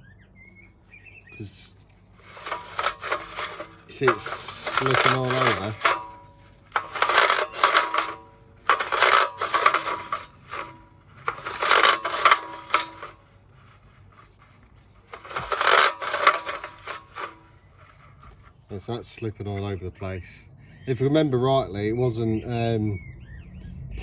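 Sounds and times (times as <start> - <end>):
spool whirring: 2.2 - 13.3, 15.1 - 18.0
pull-starter rope rasping: 2.2 - 18.4.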